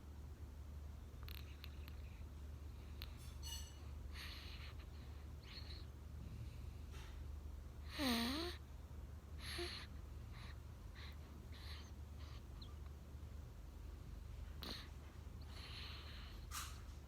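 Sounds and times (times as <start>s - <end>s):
steady low hum: 0.0s - 17.0s
baby snoring: 7.9s - 8.6s, 9.4s - 9.9s.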